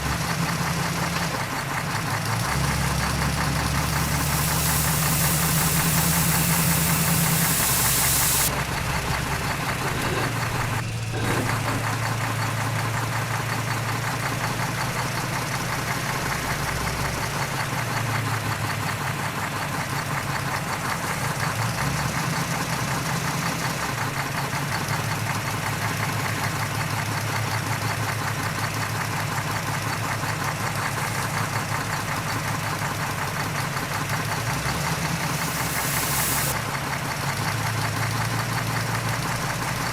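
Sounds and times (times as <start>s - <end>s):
diesel engine running near idle: 0.0s - 39.9s
loud hiss: 2.5s - 8.5s, 34.3s - 36.6s.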